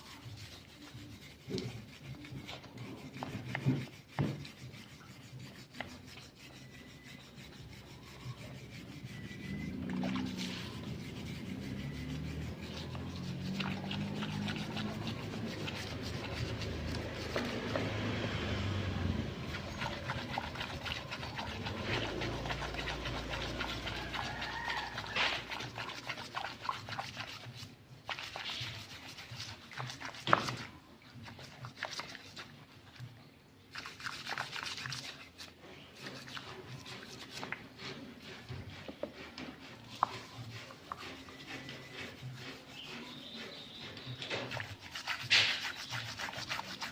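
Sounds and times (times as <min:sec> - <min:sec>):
scrubbing engine parts by hand: 0:00.0 - 0:46.9.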